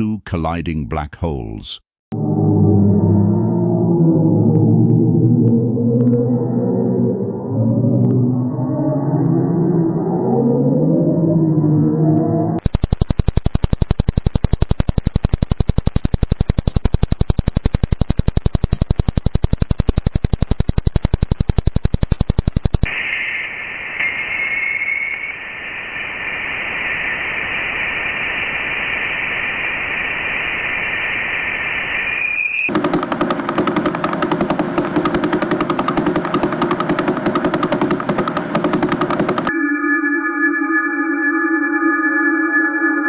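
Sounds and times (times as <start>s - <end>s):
fast pulse train of clicks: 12.6s - 23.0s, 32.6s - 39.5s
radio static hiss: 12.6s - 32.3s.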